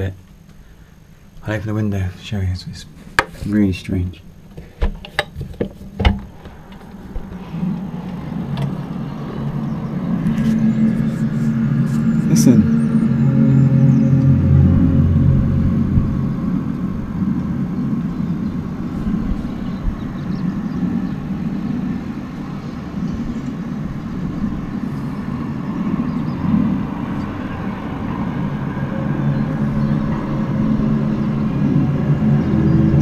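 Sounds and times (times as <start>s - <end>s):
low droning rumble: 0.0s - 33.0s.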